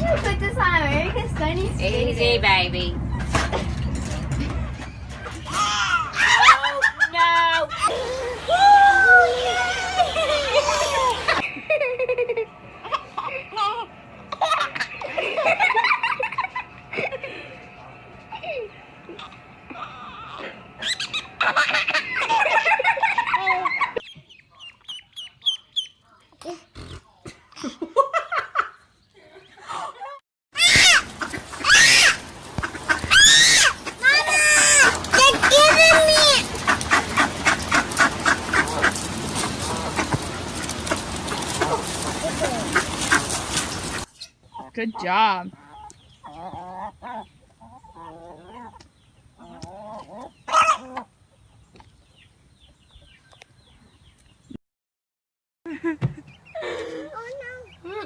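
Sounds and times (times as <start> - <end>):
animal squealing: 7.8 - 11.5, 19.2 - 21.4, 30.6 - 32.2, 33.1 - 39.0
chicken squawk: 7.8 - 11.5, 30.6 - 40.2, 49.4 - 51.1
chickens clucking: 7.8 - 11.6, 30.6 - 52.3.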